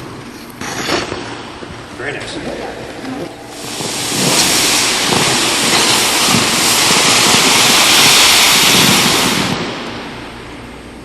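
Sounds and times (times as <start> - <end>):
skate blades scraping ice: 0.3 - 1.2.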